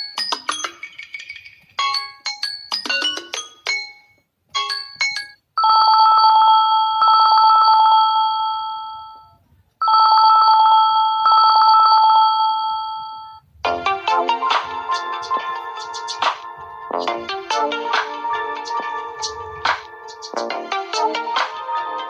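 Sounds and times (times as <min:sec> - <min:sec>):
telephone bell ringtone: 0:00.0 - 0:22.0.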